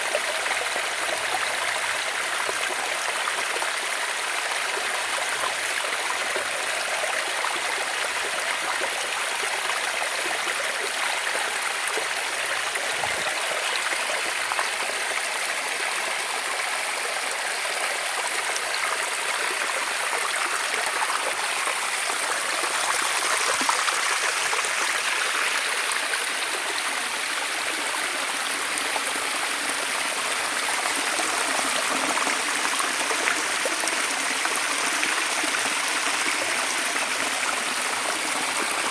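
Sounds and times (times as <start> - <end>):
running water flowing: 7.8 - 38.9.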